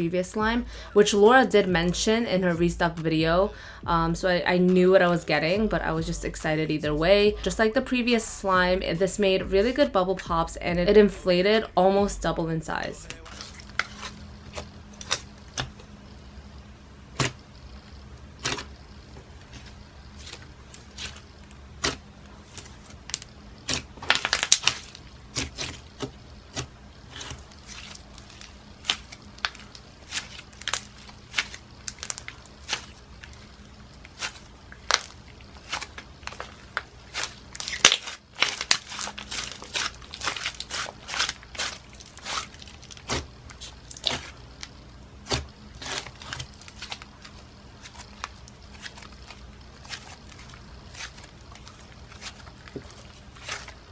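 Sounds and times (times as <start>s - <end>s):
hands squishing slime: 34.1s - 44.6s, 45.2s - 53.9s.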